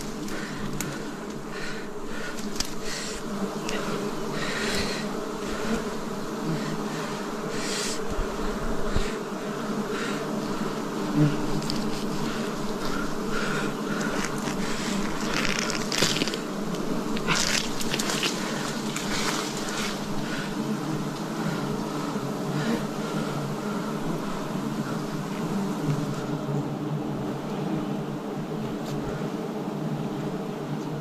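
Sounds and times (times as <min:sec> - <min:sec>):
honeybees buzzing: 0:00.0 - 0:31.0
rustling noise: 0:13.9 - 0:20.2.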